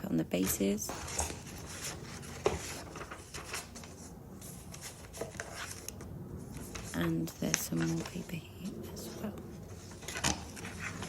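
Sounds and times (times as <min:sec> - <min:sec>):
paper rustling: 0:00.3 - 0:08.4, 0:09.0 - 0:11.0.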